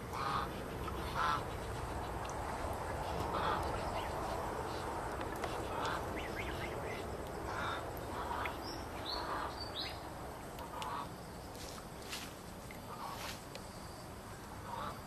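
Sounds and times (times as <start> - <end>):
ducks quacking: 0.0 - 9.6
steady outdoor hiss: 0.0 - 15.0.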